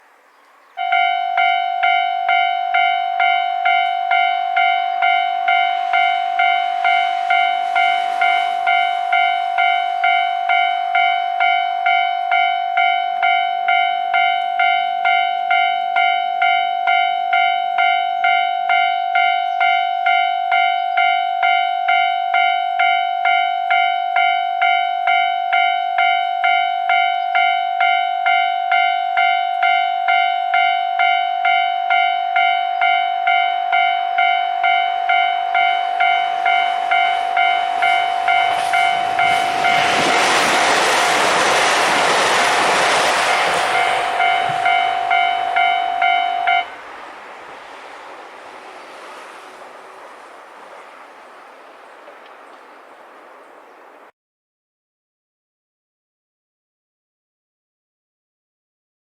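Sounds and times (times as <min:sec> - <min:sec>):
level crossing warning bell: 0:00.8 - 0:53.7
rushing noise: 0:02.4 - 0:12.3, 0:33.2 - 0:54.1.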